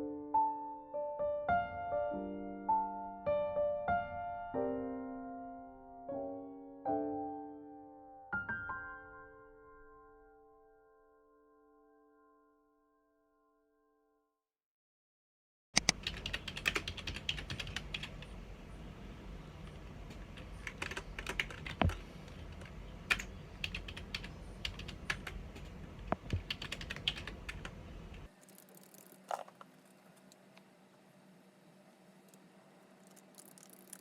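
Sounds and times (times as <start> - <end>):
computer keyboard typing: 15.8 - 18.3, 19.6 - 29.5, 33.0 - 34.0.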